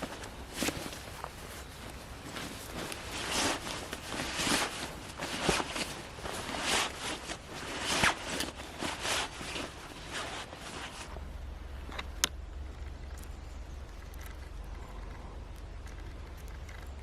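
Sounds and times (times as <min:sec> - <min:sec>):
footsteps crunching on woodland floor: 0:00.0 - 0:11.3.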